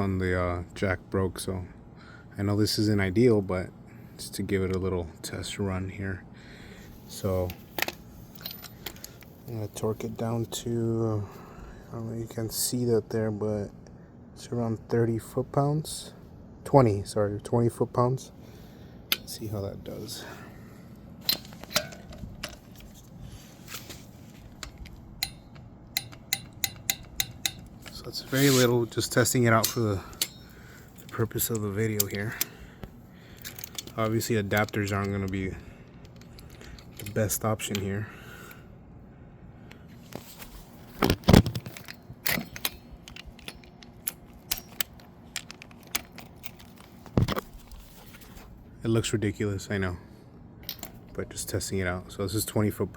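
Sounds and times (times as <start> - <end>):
metal sockets clinking: 7.2 - 9.3, 19.1 - 19.6, 21.2 - 23.1, 24.4 - 32.6, 33.3 - 38.0, 41.0 - 47.6, 50.6 - 51.2
metal clunk: 21.2 - 22.6
torque wrench ratchet clicks: 25.2 - 27.7.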